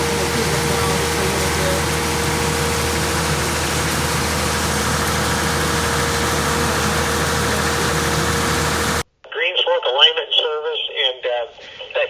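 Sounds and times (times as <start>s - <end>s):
engine idling: 0.0s - 9.0s.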